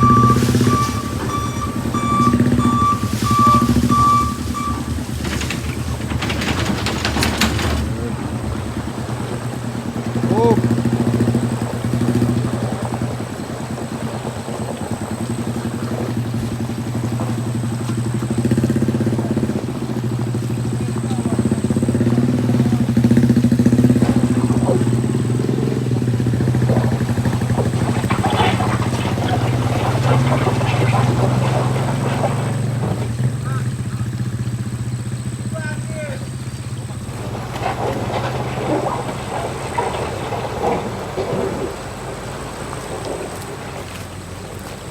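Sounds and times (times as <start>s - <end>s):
faint voices: 0.0s - 11.0s, 19.0s - 23.1s, 28.1s - 34.5s
vehicle engine running: 0.0s - 44.9s.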